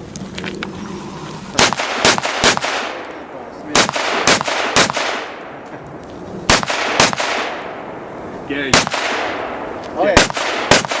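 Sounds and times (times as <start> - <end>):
rifle shots with echo: 1.6 - 5.6, 6.5 - 8.0, 8.6 - 11.0.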